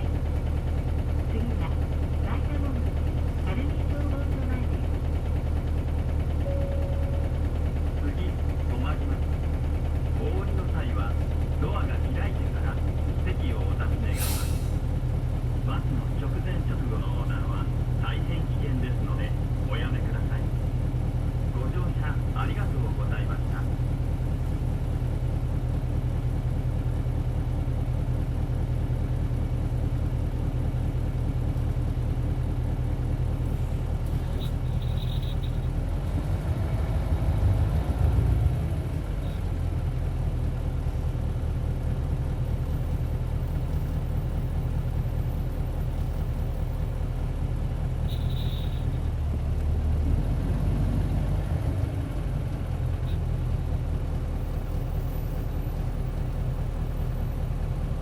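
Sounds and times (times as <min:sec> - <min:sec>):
bus diesel engine running: 0:00.0 - 0:58.0
short high beeps: 0:06.5 - 0:07.4.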